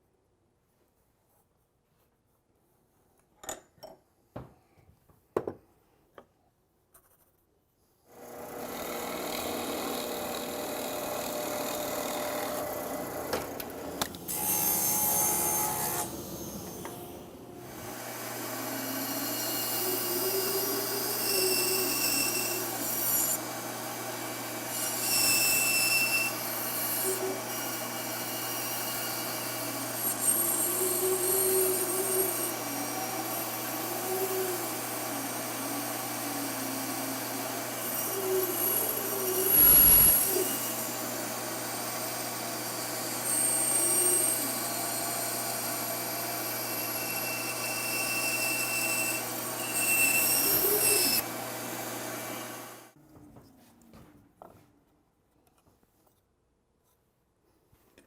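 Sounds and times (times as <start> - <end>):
sawing and rubbing wood: 24.3 - 40.8.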